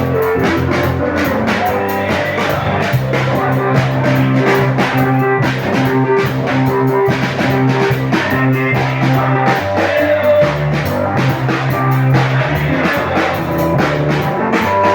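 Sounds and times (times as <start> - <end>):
held bass line: 0.0 - 14.9
praise music with drum beat: 0.0 - 14.9.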